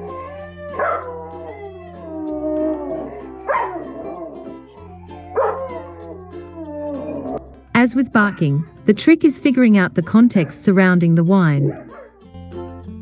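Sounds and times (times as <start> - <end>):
dog whining: 0.0 - 8.9, 11.6 - 12.3
background music: 0.0 - 13.0.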